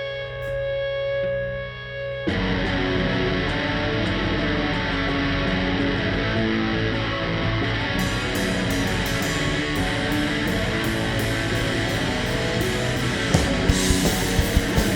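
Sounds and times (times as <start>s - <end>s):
ringing electric guitar tone: 0.0s - 14.9s
heavy rock band playing: 7.2s - 14.9s
drum hits: 10.8s - 14.9s.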